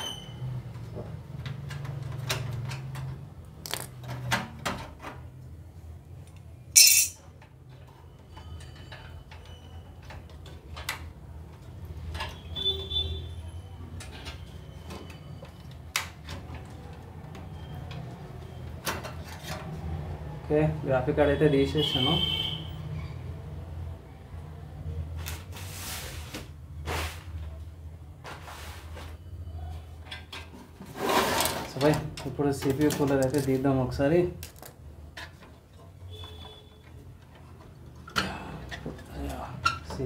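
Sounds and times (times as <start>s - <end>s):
metal clicks and clinks: 6.8s - 7.3s.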